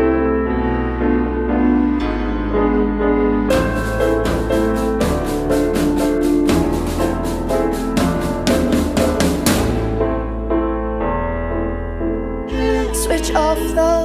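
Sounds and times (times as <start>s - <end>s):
piano chords: 0.0s - 14.0s
drum kit beat: 3.5s - 10.4s.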